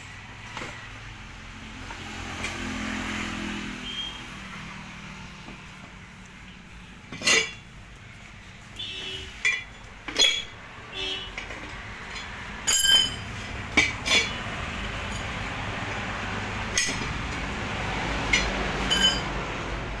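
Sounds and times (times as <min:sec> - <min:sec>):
metal tools knocking on metal: 0:09.4 - 0:10.6, 0:11.3 - 0:15.6, 0:16.7 - 0:17.4, 0:18.2 - 0:19.4.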